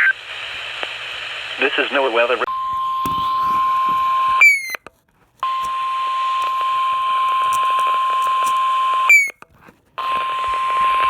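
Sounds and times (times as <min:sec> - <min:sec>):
radio squelch burst: 0:00.0 - 0:04.8.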